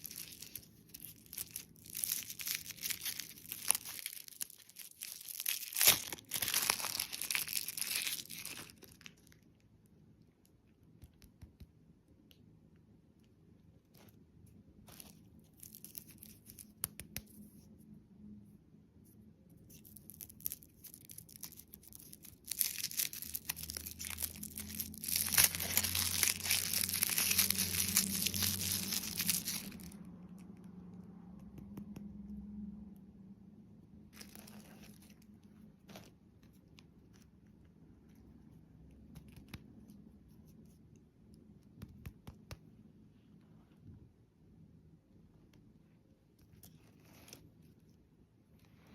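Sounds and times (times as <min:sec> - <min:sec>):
candy packaging crinkling: 0:00.0 - 0:09.6, 0:14.8 - 0:17.3, 0:19.6 - 0:30.6, 0:34.1 - 0:37.4.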